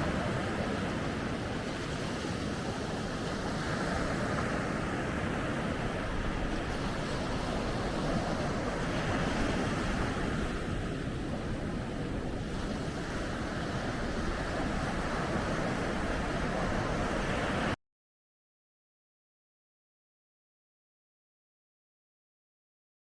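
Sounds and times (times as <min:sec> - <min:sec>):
ocean waves breaking on beach: 0:00.0 - 0:17.8
wind on microphone: 0:00.0 - 0:17.8.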